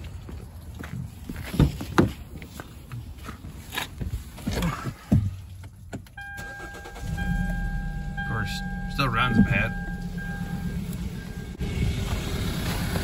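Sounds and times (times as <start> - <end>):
steady electronic tone: 7.0 - 12.0.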